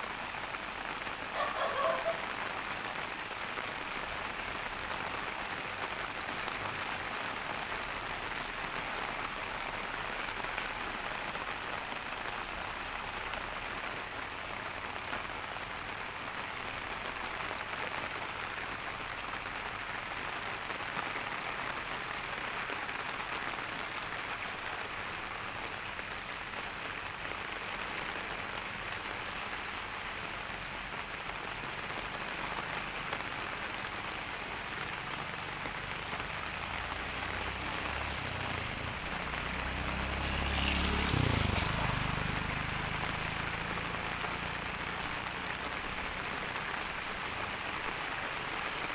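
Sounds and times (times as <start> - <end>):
rain pattering: 0.0 - 48.9.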